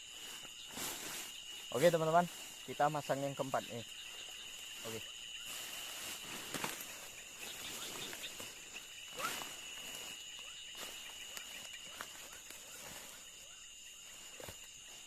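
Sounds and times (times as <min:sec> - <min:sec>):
night insects trilling: 0:00.0 - 0:15.0
footsteps: 0:04.2 - 0:13.4.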